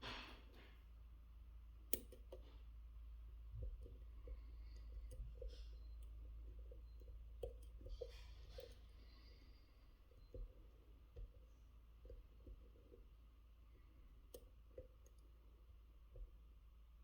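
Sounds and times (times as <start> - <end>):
lock pick clicking in lock: 1.9 - 2.4.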